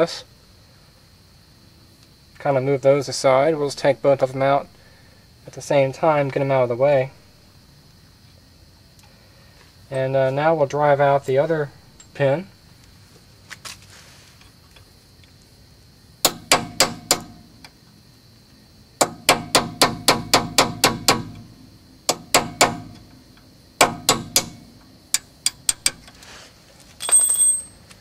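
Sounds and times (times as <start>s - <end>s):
hammer striking metal punch: 16.2s - 17.4s, 19.0s - 21.4s, 22.1s - 23.1s, 23.8s - 26.0s
high metallic ring: 27.0s - 27.8s.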